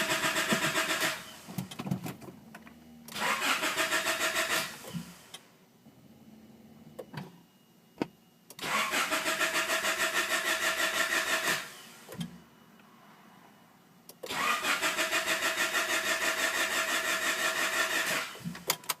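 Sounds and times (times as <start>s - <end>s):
starter cranking engine: 0.0s - 1.2s, 3.1s - 4.7s, 8.6s - 11.6s, 14.3s - 18.4s.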